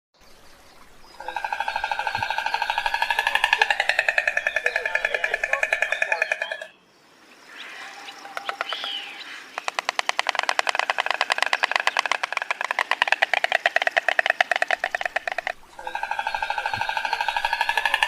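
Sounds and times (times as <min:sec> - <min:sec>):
stork bill-clattering: 0:01.3 - 0:06.7, 0:09.6 - 0:18.0.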